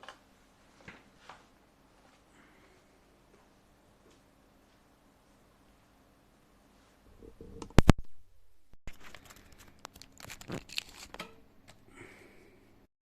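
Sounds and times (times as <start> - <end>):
rustling and crackling: 8.9 - 11.8.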